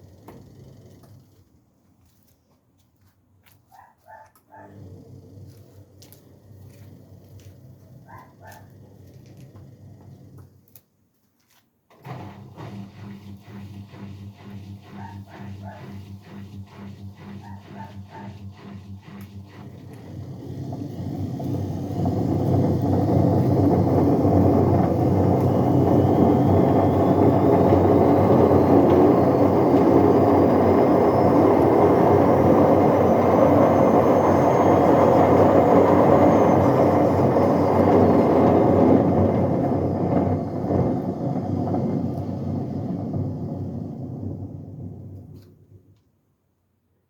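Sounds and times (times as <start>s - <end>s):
motor whine rising in pitch: 12.1s - 45.4s
washing machine drum rumbling: 19.4s - 45.2s.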